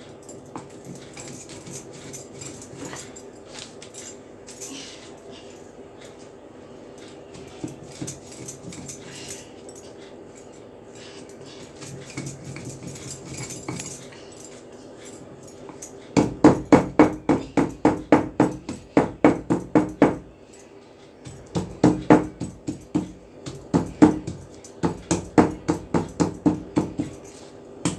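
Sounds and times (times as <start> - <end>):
stone roller knocking on stone: 21.3 - 27.2.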